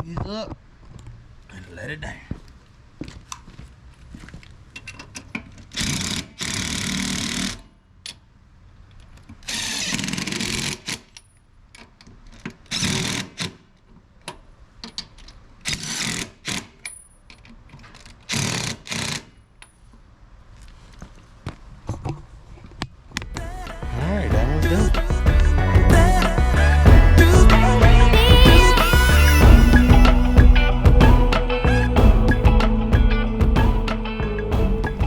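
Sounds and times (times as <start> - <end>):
cordless drill running lug nuts: 5.8 - 7.6, 9.5 - 10.8.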